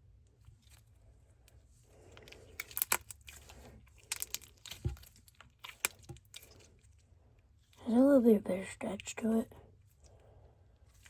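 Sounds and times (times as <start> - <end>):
slime squishing and crackling: 1.6 - 7.9.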